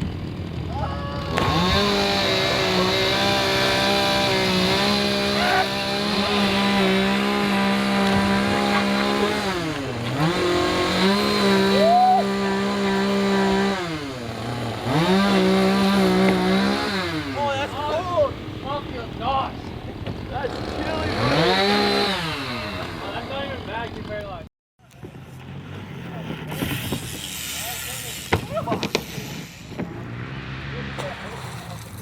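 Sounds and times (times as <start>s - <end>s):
chainsaw revving: 0.0s - 24.5s.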